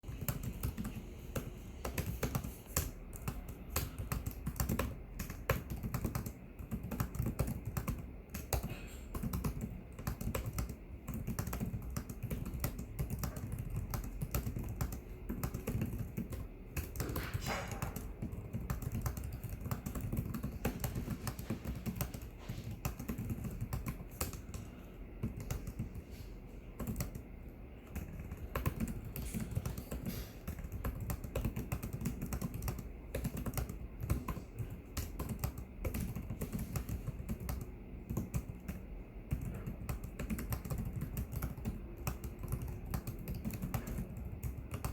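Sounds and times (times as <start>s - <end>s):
laptop keyboard typing: 0.0s - 44.9s.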